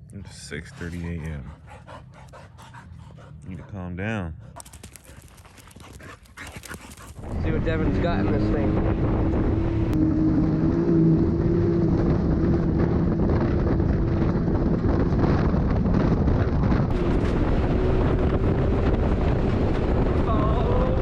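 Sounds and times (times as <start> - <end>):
wind buffeting microphone: 5.8 - 21.0
vehicle engine running: 7.2 - 21.0.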